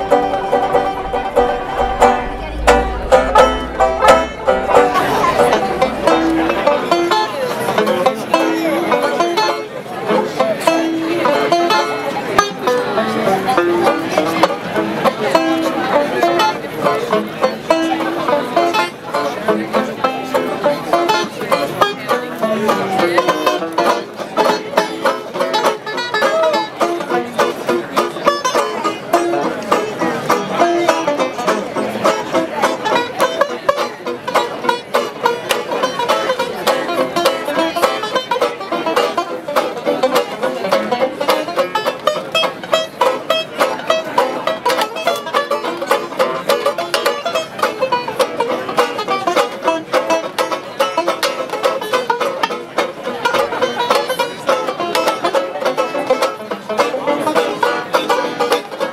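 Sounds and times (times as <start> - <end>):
banjo picking bluegrass tune: 0.0 - 58.9.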